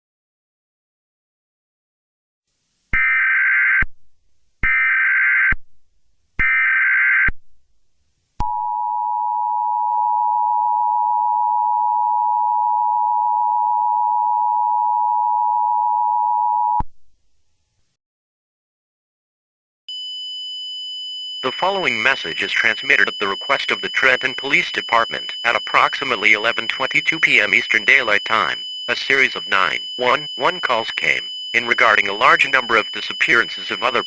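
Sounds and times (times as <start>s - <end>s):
steady two-tone alert signal: 19.9s - 34.0s
data tone bursts: 21.4s - 34.0s.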